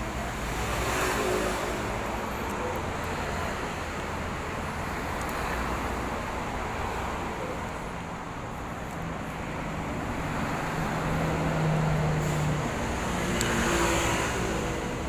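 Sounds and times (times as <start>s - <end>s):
passing vehicles rumbling: 0.0s - 15.0s.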